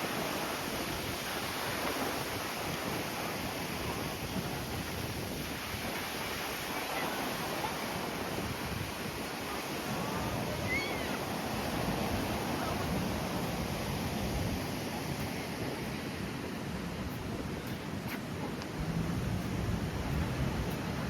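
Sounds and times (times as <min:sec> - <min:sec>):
surf washing: 0:00.0 - 0:21.0
wind on microphone: 0:00.0 - 0:21.0.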